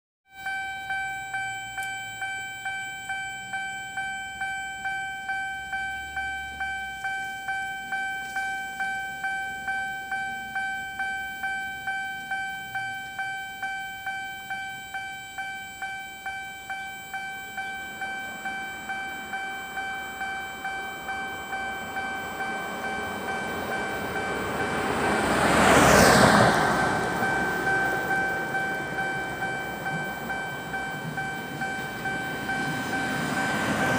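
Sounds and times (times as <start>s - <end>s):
railroad crossing warning bell: 0.3s - 33.9s
diesel train passing: 17.9s - 33.9s.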